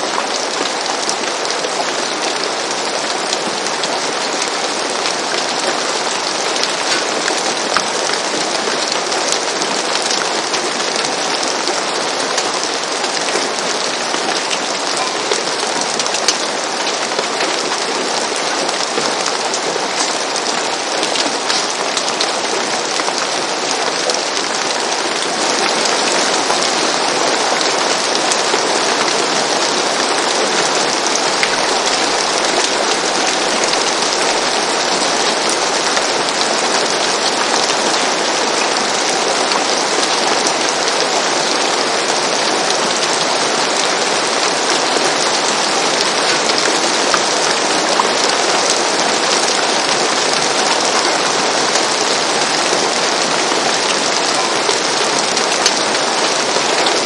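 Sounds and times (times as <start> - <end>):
rain on a roof: 0.0 - 57.0.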